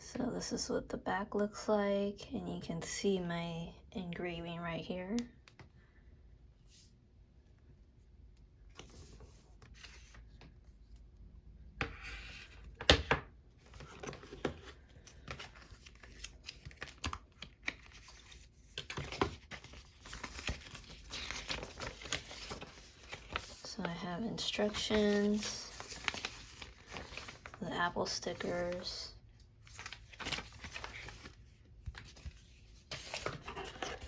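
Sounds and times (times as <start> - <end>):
packaging rustling and tearing: 13.7 - 23.8, 24.9 - 27.6, 29.6 - 34.0.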